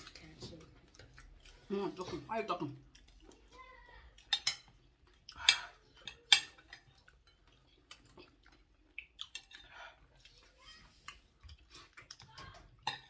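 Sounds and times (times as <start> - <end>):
cutlery clinking against bowls: 4.1 - 9.8, 11.0 - 13.0.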